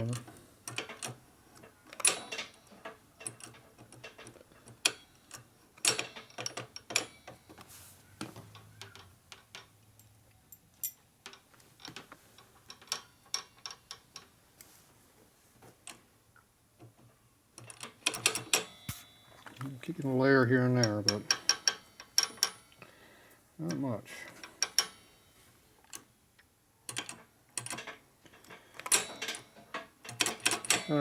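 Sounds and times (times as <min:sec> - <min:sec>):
hand tools clicking and tapping: 0:00.0 - 0:14.7, 0:17.6 - 0:19.7, 0:20.7 - 0:22.9, 0:23.7 - 0:25.1.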